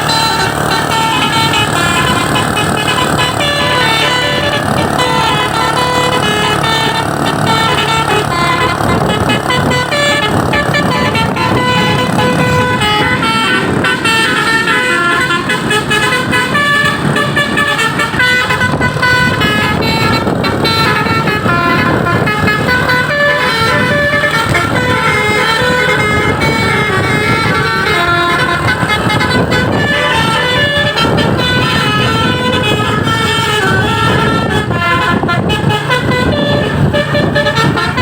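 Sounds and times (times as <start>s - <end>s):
truck musical horn tune: 0.0s - 38.0s
vehicle noise: 0.0s - 38.0s.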